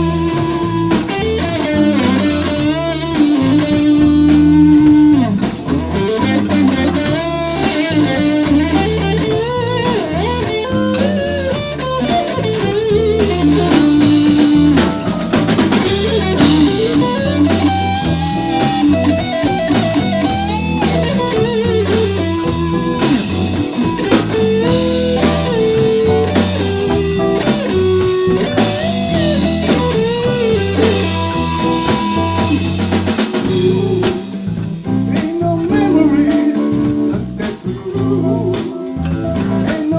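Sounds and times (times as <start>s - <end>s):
bass line: 0.0s - 39.9s
drum kit beat: 0.0s - 39.9s
lead electric guitar: 0.0s - 39.9s.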